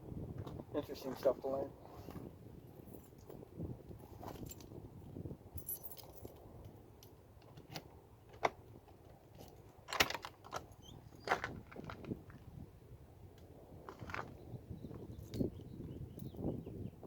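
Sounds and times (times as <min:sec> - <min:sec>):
small metal objects clinking: 0:05.6 - 0:06.4.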